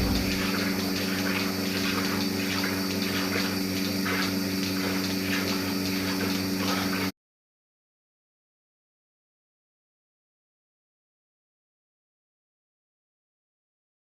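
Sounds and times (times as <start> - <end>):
steady rushing noise: 0.0 - 0.6
fast regular throb: 0.0 - 0.8
low hum: 0.0 - 1.0.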